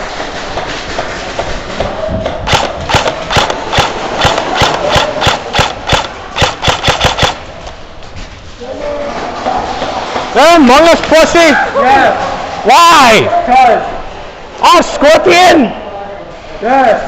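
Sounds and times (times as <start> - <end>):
steady background noise: 0.0 - 17.0
airsoft gun shots: 2.5 - 7.6.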